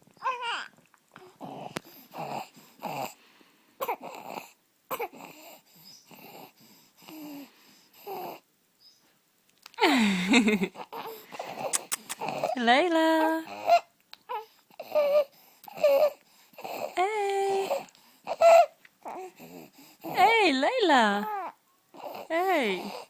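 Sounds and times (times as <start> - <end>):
baby vocal sound: 0.2 - 3.2, 10.9 - 20.3.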